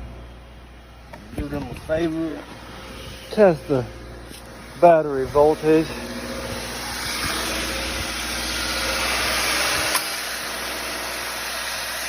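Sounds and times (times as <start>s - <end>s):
car engine idling: 0.0s - 12.0s
sharp click: 9.9s - 10.2s.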